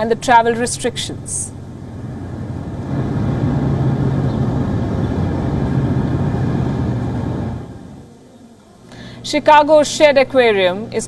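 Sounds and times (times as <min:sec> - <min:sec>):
engine rumble: 0:00.0 - 0:08.2.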